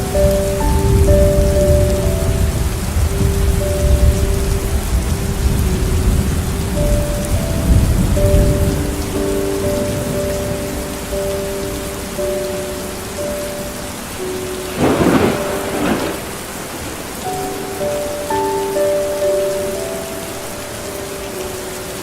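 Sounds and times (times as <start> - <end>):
rolling thunder: 0.0 - 11.0, 14.6 - 17.2
steady rain: 0.0 - 22.0.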